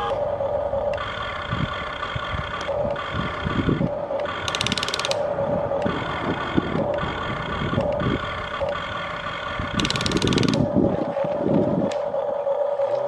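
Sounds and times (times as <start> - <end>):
toy excavator motors whirring: 0.0 - 13.0
rapid clicking: 0.8 - 10.8.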